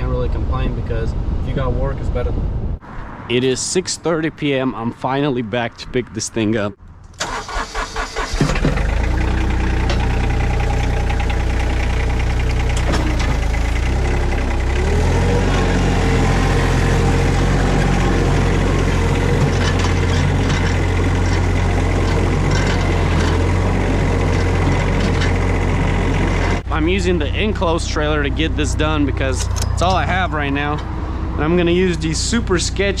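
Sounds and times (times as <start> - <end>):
skid steer engine running: 8.1 - 31.7.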